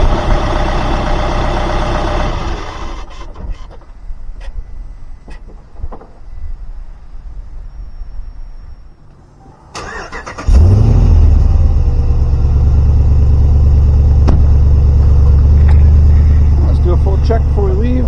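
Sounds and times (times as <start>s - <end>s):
truck engine idling: 0.0s - 5.8s, 6.9s - 18.0s
engine starter cranking: 9.7s - 11.6s.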